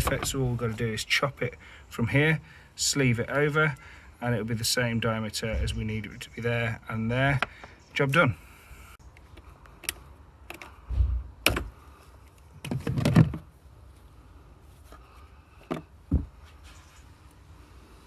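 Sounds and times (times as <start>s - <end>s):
low thump: 5.5s - 5.9s, 10.9s - 11.7s.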